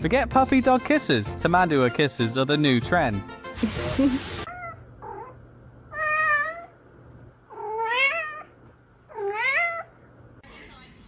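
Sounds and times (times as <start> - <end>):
cat meowing: 4.5 - 6.8, 7.5 - 10.0.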